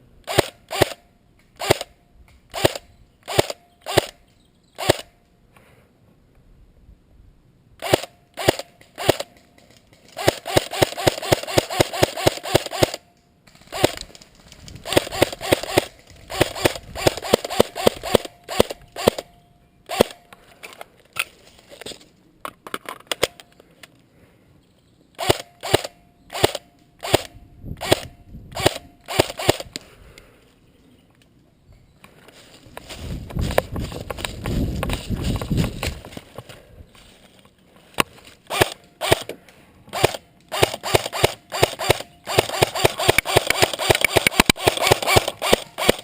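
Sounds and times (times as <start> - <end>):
airsoft rifle firing: 1.6 - 4.2, 7.8 - 19.3, 19.9 - 20.2, 25.2 - 29.7, 38.0 - 46.0.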